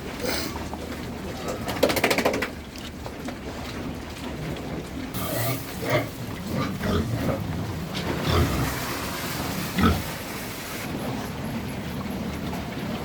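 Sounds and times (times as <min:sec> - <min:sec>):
pigs grunting: 0:05.1 - 0:11.6.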